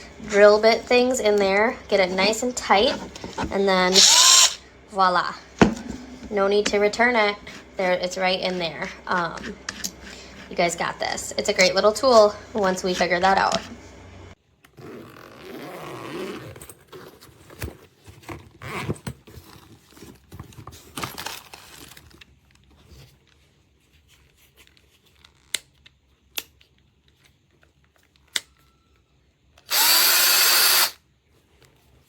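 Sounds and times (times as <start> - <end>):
drill motor running: 2.9 - 4.6, 29.7 - 31.0
rustling and knocking: 5.5 - 7.8.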